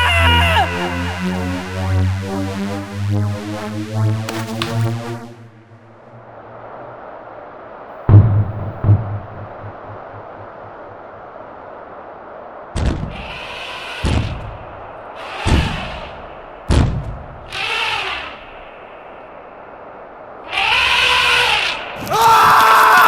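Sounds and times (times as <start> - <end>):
short pitched cries: 0.0 - 1.2
music: 0.0 - 5.6
heavy thumps: 8.1 - 10.8.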